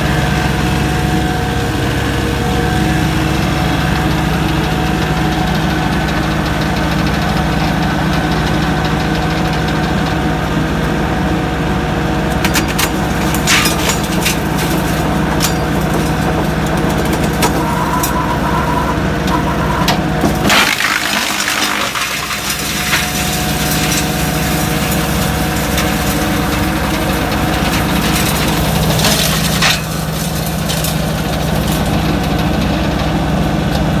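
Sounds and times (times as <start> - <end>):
wood chipper engine running: 0.0 - 34.0
wood cracking and crunching: 12.1 - 33.9.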